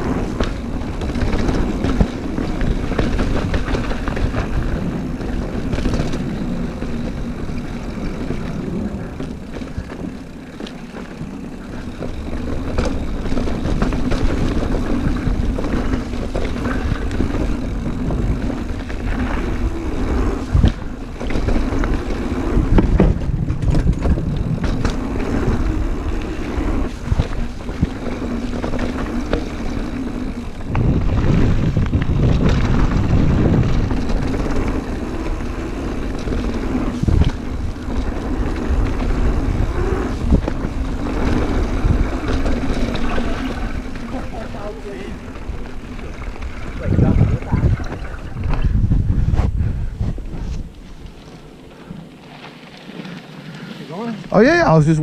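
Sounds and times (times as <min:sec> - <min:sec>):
mountain bike rattling: 0:00.0 - 0:55.0
wind on microphone: 0:11.7 - 0:44.6, 0:45.2 - 0:51.2.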